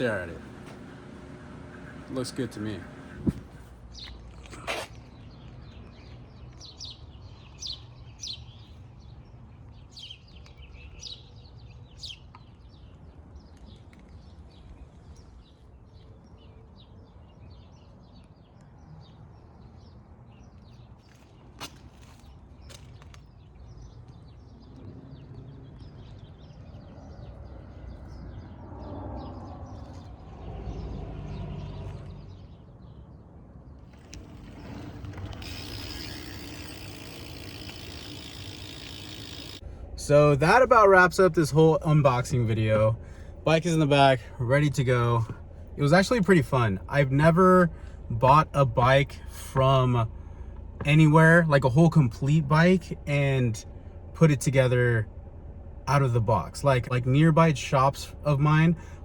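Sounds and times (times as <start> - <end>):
low outdoor rumble: 0.0 - 6.4, 22.0 - 59.0
birds chirping: 0.0 - 59.0.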